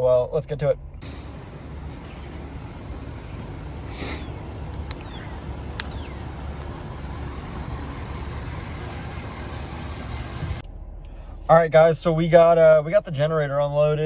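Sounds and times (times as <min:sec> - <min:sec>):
truck engine and road noise: 0:00.0 - 0:14.0
sharp clicks: 0:03.2 - 0:07.9.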